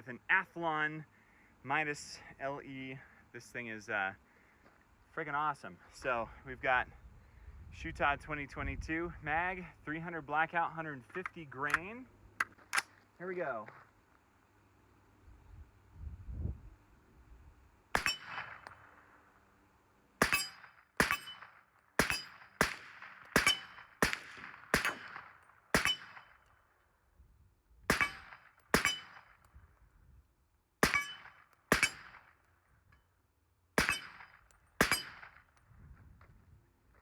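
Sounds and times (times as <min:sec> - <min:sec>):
steel target ringing: 0:18.0 - 0:18.6, 0:20.2 - 0:22.4, 0:23.4 - 0:23.8, 0:25.8 - 0:26.4, 0:27.9 - 0:29.2, 0:30.8 - 0:32.1, 0:33.8 - 0:35.2
pistol shots: 0:18.0 - 0:19.1, 0:20.2 - 0:26.4, 0:27.9 - 0:29.4, 0:30.8 - 0:32.4, 0:33.8 - 0:35.5.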